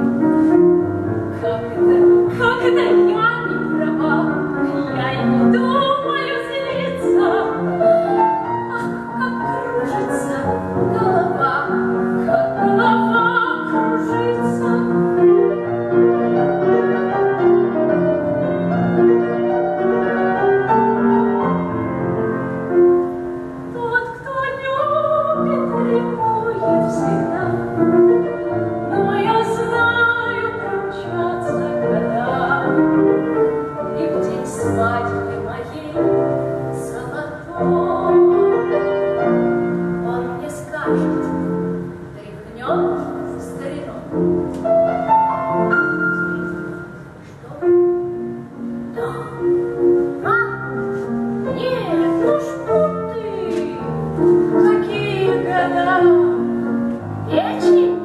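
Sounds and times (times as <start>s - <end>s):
piano accompaniment: 0.0s - 58.0s
woman singing operatically: 1.4s - 15.2s, 23.8s - 27.7s, 28.9s - 32.9s, 34.0s - 36.2s, 36.8s - 38.4s, 49.0s - 49.6s, 51.4s - 53.9s, 54.5s - 56.5s, 57.3s - 58.0s.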